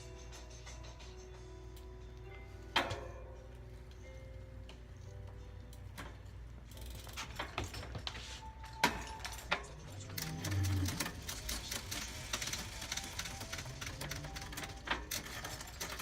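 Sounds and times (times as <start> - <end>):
bicycle drivetrain clicking: 6.6 - 8.0, 9.2 - 16.0.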